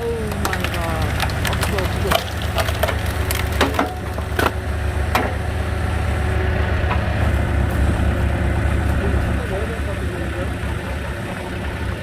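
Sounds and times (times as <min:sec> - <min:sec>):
log cracking and splintering: 0:00.0 - 0:05.4
log splitter engine running: 0:00.0 - 0:12.0.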